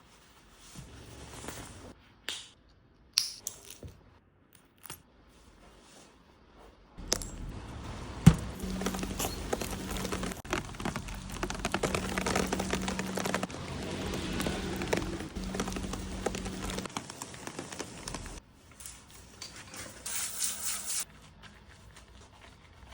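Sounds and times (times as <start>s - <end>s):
raindrops pattering: 7.0s - 18.4s.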